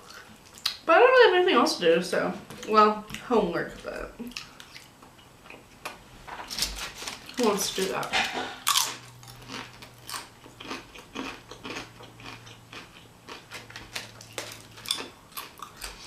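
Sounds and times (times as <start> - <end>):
chewing and mouth sounds: 4.2 - 5.9, 8.6 - 16.0.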